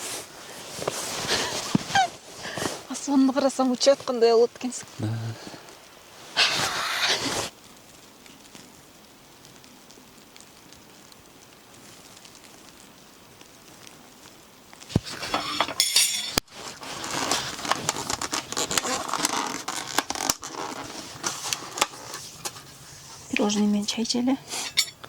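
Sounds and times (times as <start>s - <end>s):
faint steady hiss: 0.0s - 25.0s
rustling: 0.0s - 25.0s
dishes and utensils clinking: 15.2s - 16.4s, 24.6s - 25.0s.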